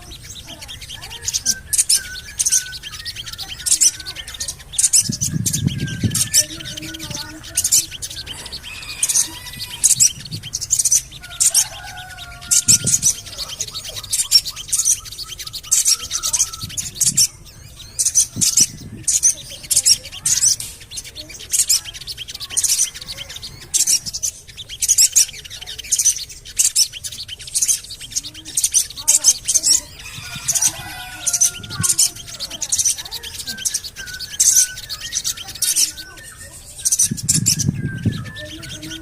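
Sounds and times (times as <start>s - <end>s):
lower whistled notes: 0.0s - 20.8s, 29.7s - 39.0s
bird chirping high: 0.0s - 39.0s.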